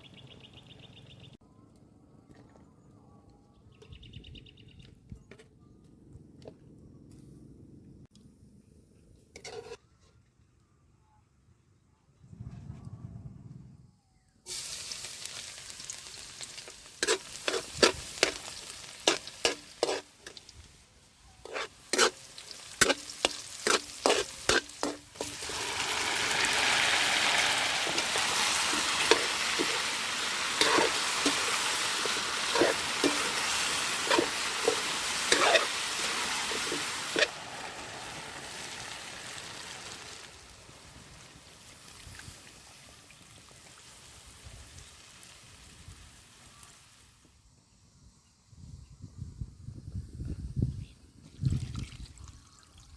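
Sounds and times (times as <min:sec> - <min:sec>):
utensil scraping a pan: 0:09.4 - 0:09.8, 0:17.0 - 0:20.4, 0:21.4 - 0:25.6, 0:27.8 - 0:37.3
food sizzling in a pan: 0:14.5 - 0:47.2.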